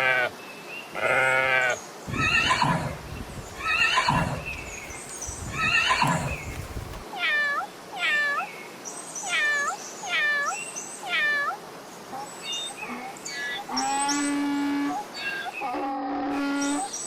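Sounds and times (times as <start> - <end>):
harsh farm animal calls: 1.0 - 7.1.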